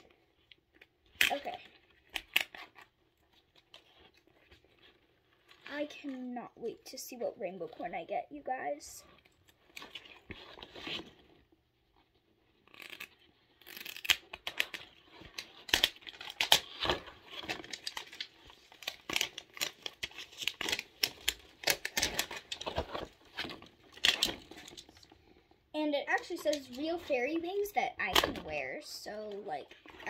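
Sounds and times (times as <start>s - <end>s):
toy packaging tearing and crinkling: 1.1s - 4.9s, 12.6s - 25.2s, 26.0s - 28.5s
packaging rustling and crackling: 13.9s - 25.4s.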